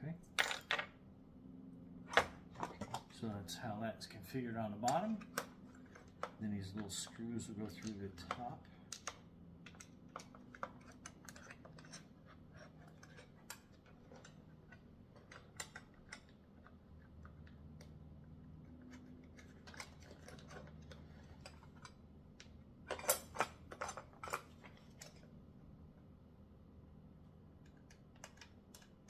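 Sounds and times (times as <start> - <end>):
faint steady hum: 0.0 - 29.0
metal clicks of screws and hex wrench: 7.7 - 16.4, 27.6 - 29.0.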